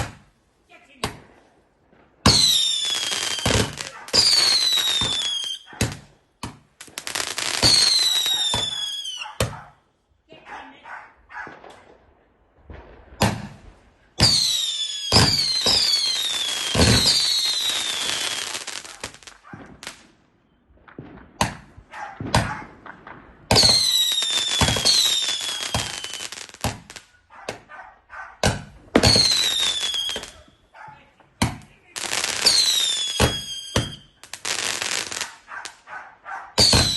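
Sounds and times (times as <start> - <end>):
fireworks crackling and popping: 0.0 - 9.7, 11.2 - 27.7, 28.4 - 36.9
fireworks bangs: 0.0 - 36.9
firework whistles falling in pitch: 2.3 - 5.7, 7.2 - 9.2, 14.2 - 19.3, 23.5 - 26.8, 29.0 - 30.5, 32.2 - 35.2, 36.6 - 36.9.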